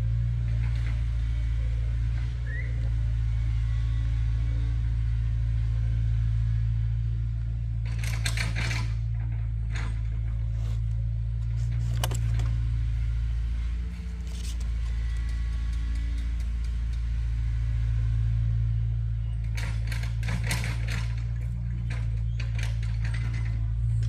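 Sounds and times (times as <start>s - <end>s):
vehicle engine humming: 0.0s - 24.0s
knocks and rattles: 19.4s - 24.0s.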